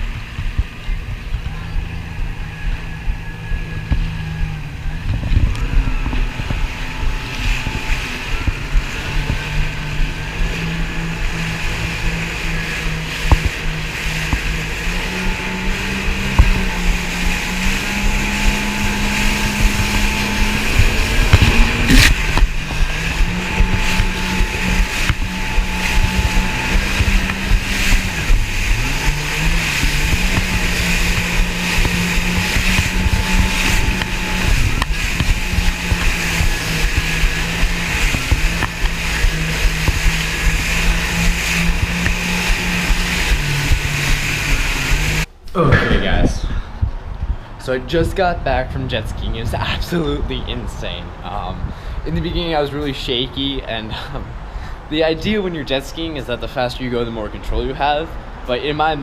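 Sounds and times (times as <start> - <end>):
jet ski engine running: 0.0 - 45.4
hull thumping on water: 0.0 - 47.4
wind and water rushing: 0.0 - 59.0.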